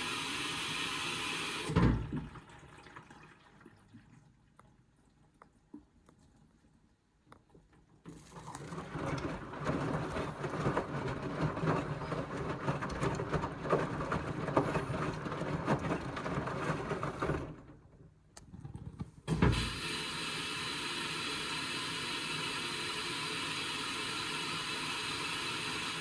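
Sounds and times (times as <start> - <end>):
water and clothes sloshing: 8.1 - 17.7
washing machine drum tumbling: 8.7 - 17.8.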